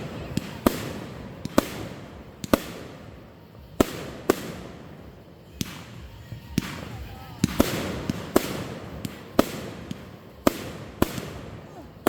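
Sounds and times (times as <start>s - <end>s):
fireworks bangs with rumbling echo: 0.0s - 12.0s.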